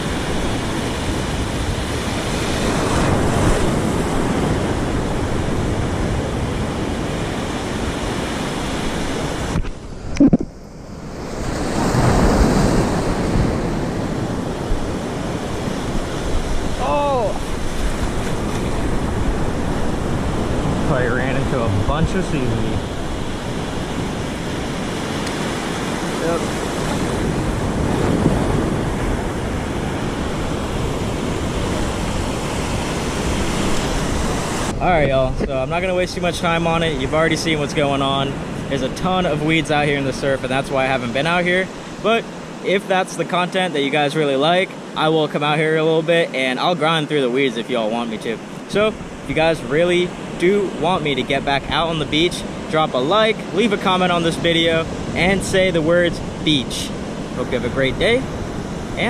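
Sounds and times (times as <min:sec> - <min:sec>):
wind buffeting microphone: 0:00.0 - 0:40.6
ocean surf washing onto beach: 0:00.0 - 0:59.0.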